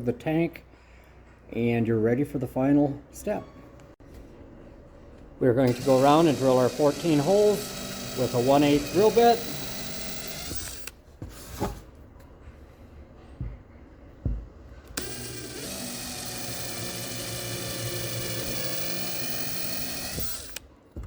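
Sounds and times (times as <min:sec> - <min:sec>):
power drill drilling plastic: 0:05.6 - 0:11.0, 0:15.0 - 0:20.7.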